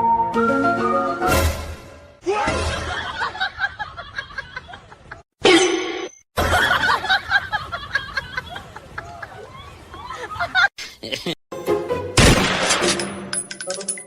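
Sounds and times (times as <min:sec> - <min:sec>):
people laughing and snickering: 0:02.6 - 0:05.2, 0:06.4 - 0:11.4.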